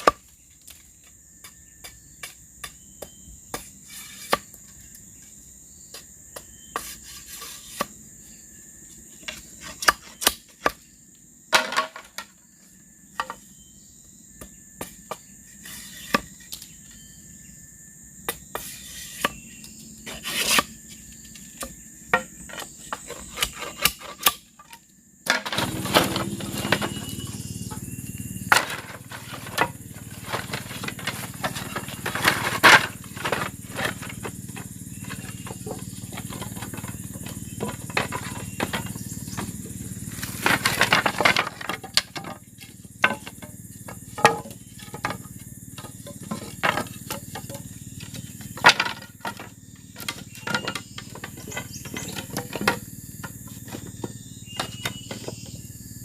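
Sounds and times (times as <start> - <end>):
high-pitched insect drone: 0.0 - 56.0
knocks and taps on bamboo: 13.2 - 13.4, 28.5 - 55.5.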